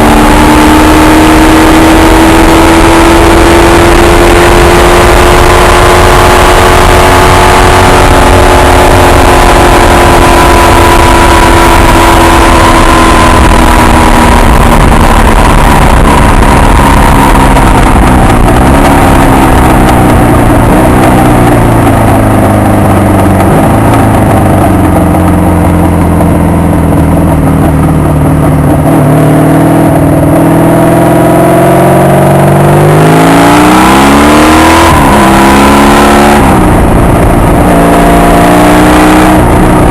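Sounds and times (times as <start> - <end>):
wind rumble: 0.0 - 31.1, 32.2 - 39.9
motorcycle engine revving: 0.0 - 39.9.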